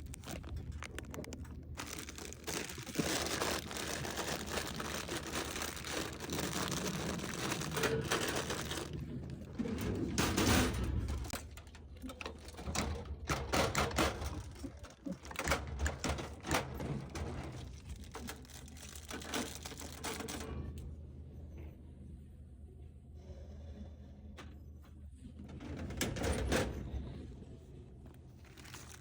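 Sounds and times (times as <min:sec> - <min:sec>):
plastic wrappers crinkling: 0:00.0 - 0:09.6, 0:17.6 - 0:20.4, 0:28.3 - 0:29.0.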